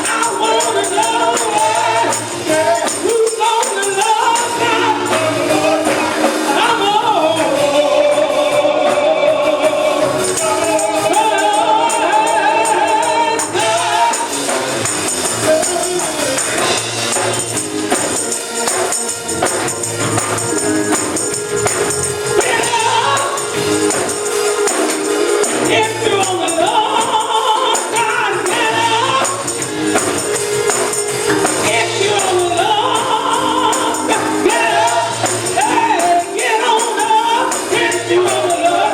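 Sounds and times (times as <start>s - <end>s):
group singing gospel song: 0.0s - 38.9s
rattling percussion beat: 0.0s - 38.9s.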